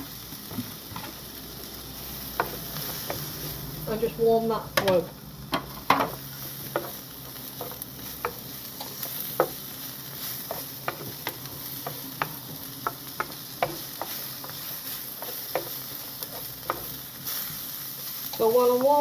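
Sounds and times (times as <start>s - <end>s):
food sizzling in a frying pan: 0.0s - 19.0s
utensil clicking against pan: 10.4s - 17.0s.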